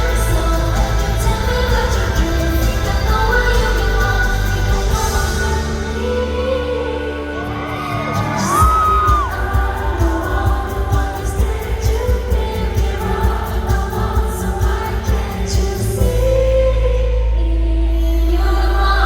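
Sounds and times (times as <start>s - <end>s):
steady drum beat: 0.0s - 6.1s, 8.1s - 16.3s
woman singing amplified: 0.0s - 19.0s.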